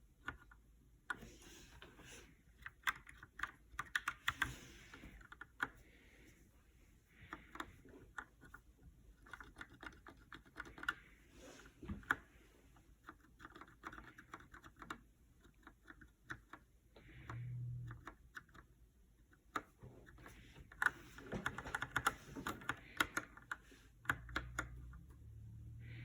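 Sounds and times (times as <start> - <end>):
mechanical keyboard typing: 2.6 - 4.6, 9.2 - 11.0, 13.1 - 16.7, 17.8 - 25.0.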